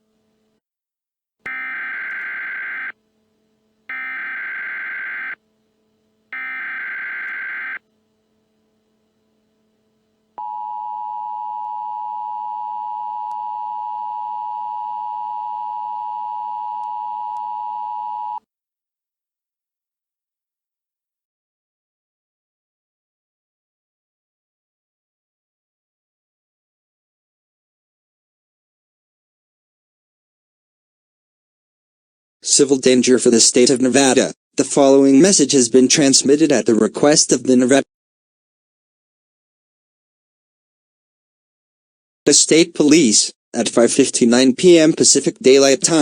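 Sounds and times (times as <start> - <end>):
digital header code bursts: 1.5 - 3.0, 3.9 - 5.4, 6.4 - 7.8
two-tone attention signal: 1.5 - 3.0, 3.9 - 5.4, 6.4 - 7.8, 10.4 - 18.4.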